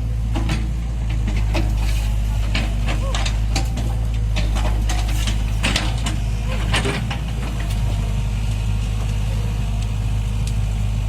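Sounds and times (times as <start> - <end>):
heavy diesel engine running: 0.0 - 11.0.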